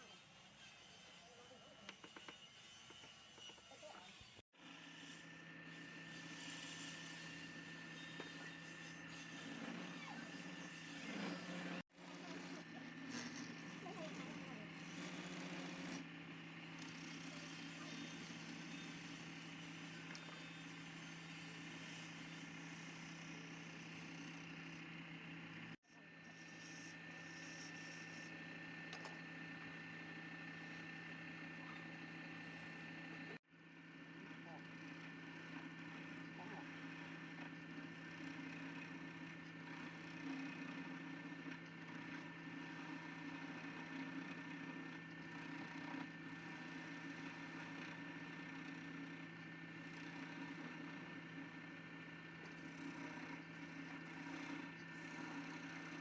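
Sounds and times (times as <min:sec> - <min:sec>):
wood lathe humming: 0:06.9 - 0:25.7, 0:34.0 - 0:56.0.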